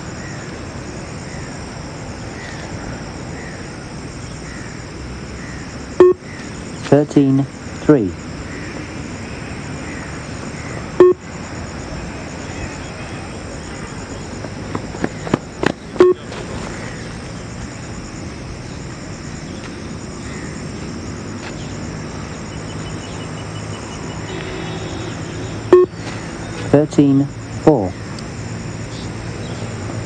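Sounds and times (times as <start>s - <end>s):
steady outdoor background hiss: 0.0s - 30.0s
short electronic beeps: 6.0s - 6.2s, 11.0s - 11.2s, 16.0s - 16.2s, 25.7s - 26.0s.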